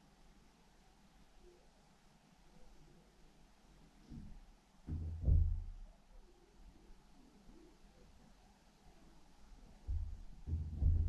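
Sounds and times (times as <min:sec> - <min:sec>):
dull thuds through ceiling: 0:04.1 - 0:05.9, 0:09.8 - 0:11.0.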